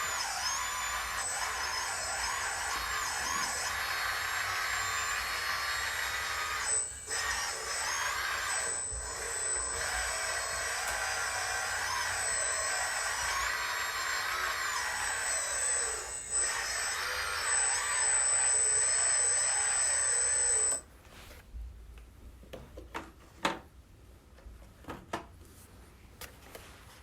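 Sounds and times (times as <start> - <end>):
small electric motors whining: 0.0 - 20.8.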